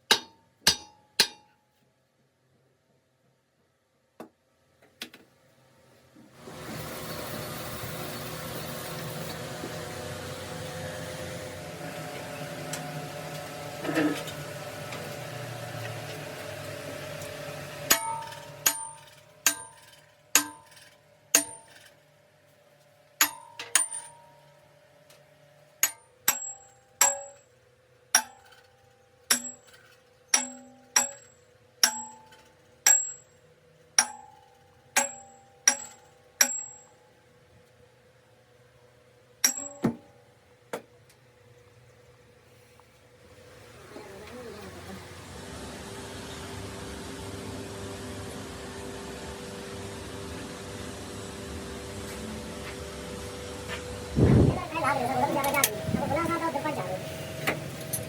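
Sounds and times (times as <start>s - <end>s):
hammer striking steel: 0.1s - 1.6s, 17.8s - 21.9s, 23.2s - 24.4s, 25.8s - 27.5s, 28.1s - 28.7s, 29.3s - 33.3s, 34.0s - 37.0s, 39.4s - 40.0s
steady machine noise: 44.6s - 58.0s.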